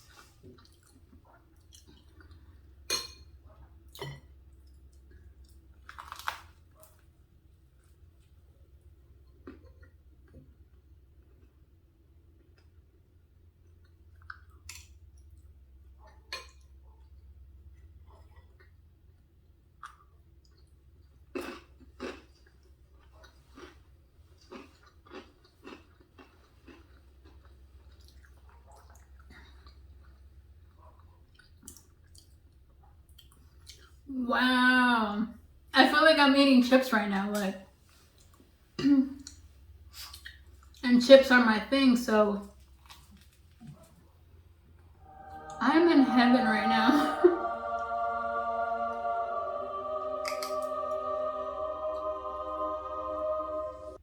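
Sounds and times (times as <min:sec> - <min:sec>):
person chewing food: 0:00.0 - 0:07.1, 0:09.1 - 0:34.0, 0:42.6 - 0:43.9.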